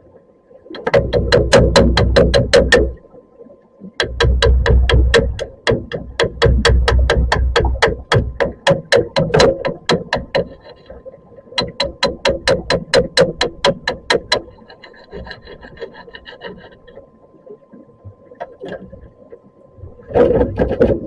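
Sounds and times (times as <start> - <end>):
fine ticking: 4.0 - 10.9, 11.6 - 16.7
rasping scraping strokes: 5.0 - 11.0, 11.6 - 17.0.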